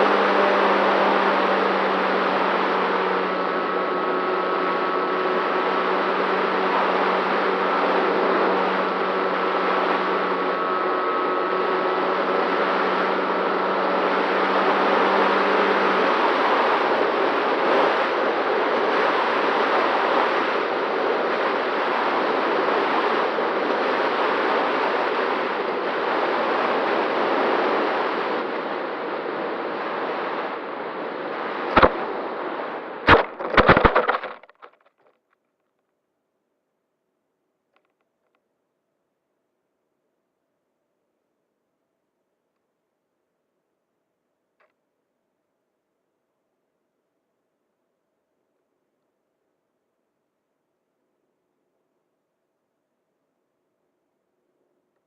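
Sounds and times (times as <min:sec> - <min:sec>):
sharp knocks: 0:33.1 - 0:34.7.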